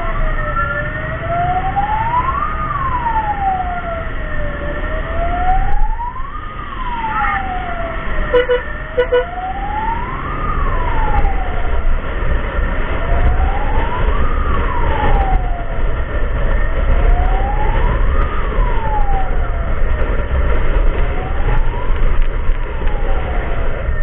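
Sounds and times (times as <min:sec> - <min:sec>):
siren wailing: 0:00.0 - 0:24.0
heavy low rumble: 0:01.3 - 0:24.0.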